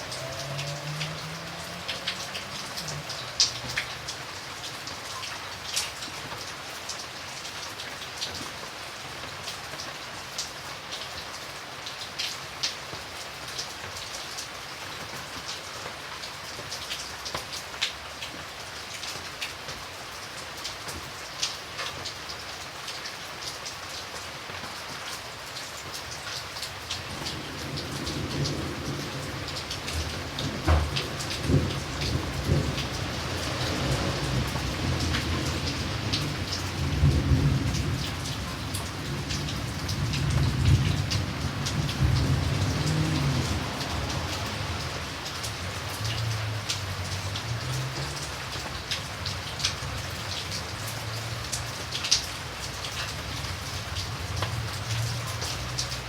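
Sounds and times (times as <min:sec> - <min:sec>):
thunder rumbling: 0:00.0 - 0:04.2, 0:27.1 - 0:45.3
raindrops striking a surface: 0:00.0 - 0:56.0
steady rain falling: 0:00.0 - 0:56.0.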